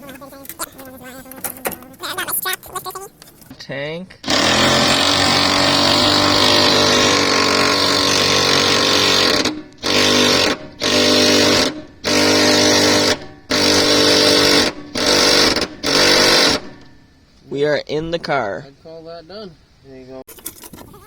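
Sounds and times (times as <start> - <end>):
power tool buzzing: 0.0 - 2.0, 4.2 - 17.2.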